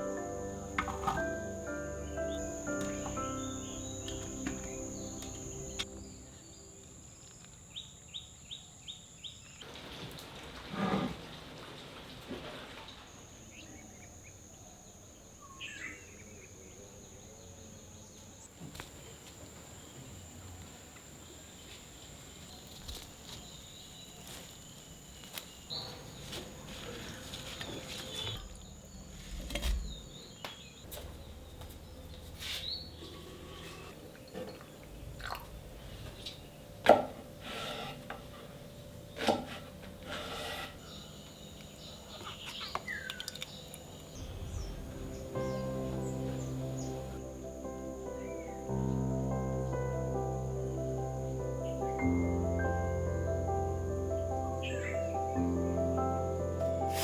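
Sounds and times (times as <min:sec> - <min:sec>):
high-pitched whine: 0:44.0 - 0:49.4.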